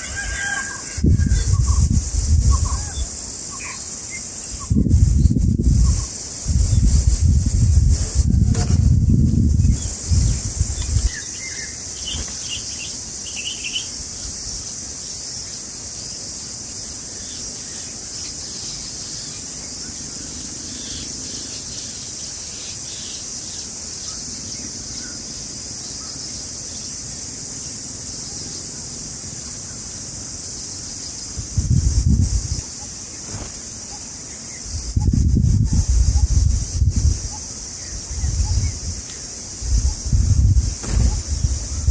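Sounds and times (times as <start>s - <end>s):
insect chorus: 0.0s - 41.9s
low rumbling rustle: 4.8s - 11.2s, 38.0s - 41.9s.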